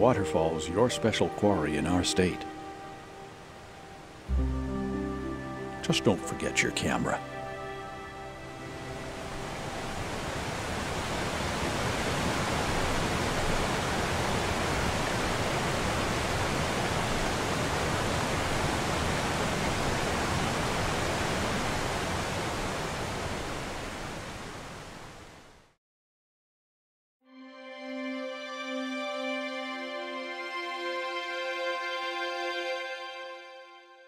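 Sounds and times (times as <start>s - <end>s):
waterfall rushing: 0.1s - 25.2s.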